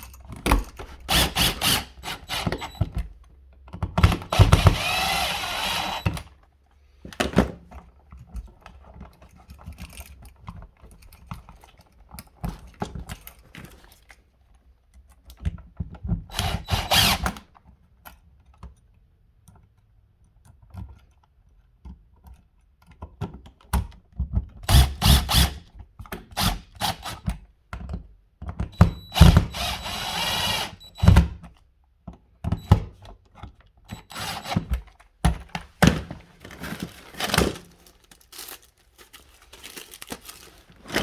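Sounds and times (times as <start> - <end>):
tools knocking and clattering: 0.0 - 1.2, 34.4 - 37.9.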